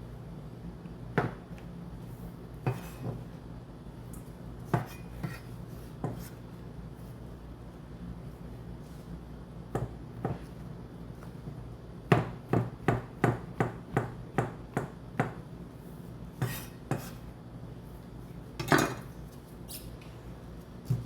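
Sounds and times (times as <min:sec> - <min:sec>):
knife chopping on cutting board: 0:02.6 - 0:03.2, 0:04.7 - 0:06.4, 0:09.7 - 0:10.5, 0:12.1 - 0:15.4, 0:16.4 - 0:17.2
knife scraping board: 0:02.7 - 0:03.2, 0:04.7 - 0:06.4, 0:16.4 - 0:17.3.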